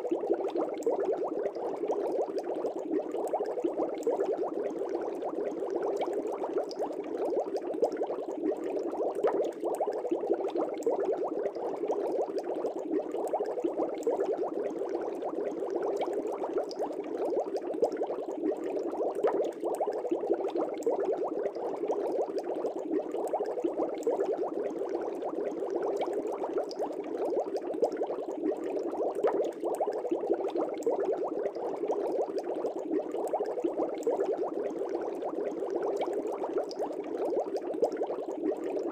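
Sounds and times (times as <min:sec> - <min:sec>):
aquarium air bubbles bubbling: 0:00.0 - 0:38.9.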